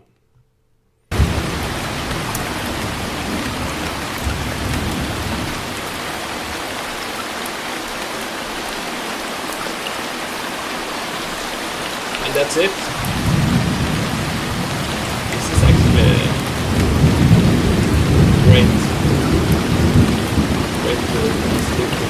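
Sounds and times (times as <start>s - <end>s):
low thunder rumbles: 1.1s - 7.2s, 12.8s - 22.0s
heavy rain pouring: 1.1s - 22.0s.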